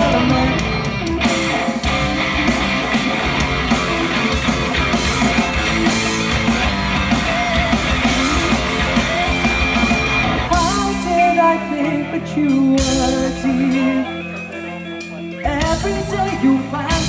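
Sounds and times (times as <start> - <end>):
bass guitar: 0.0 - 17.0
drums steady beat: 0.0 - 17.0
electric guitar: 0.0 - 17.0.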